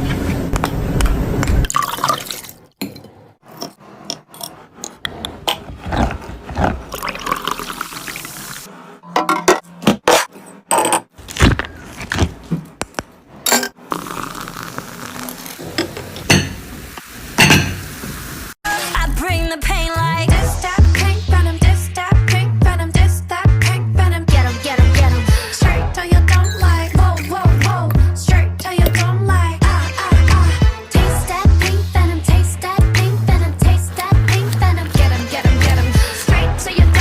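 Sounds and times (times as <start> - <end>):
liquid pouring and splashing: 1.6 - 2.7, 6.9 - 8.7.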